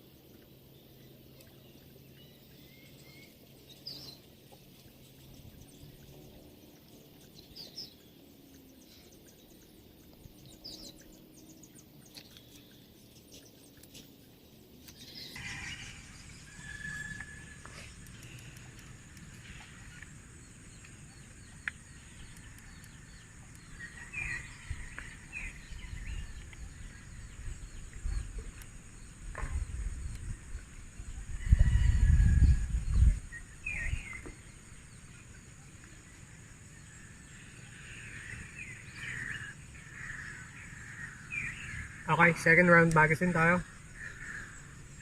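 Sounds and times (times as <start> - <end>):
small birds chirping: 0.1 - 15.4, 17.5 - 31.1
steady high-pitched hiss: 12.7 - 31.4
faint clicks: 17.2 - 20.1, 21.6 - 23.7.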